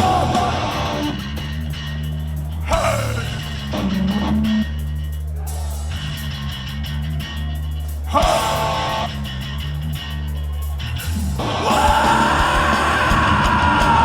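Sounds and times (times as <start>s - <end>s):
hardcore punk band playing: 0.0s - 14.0s
person shouting: 2.7s - 3.4s, 11.6s - 14.0s.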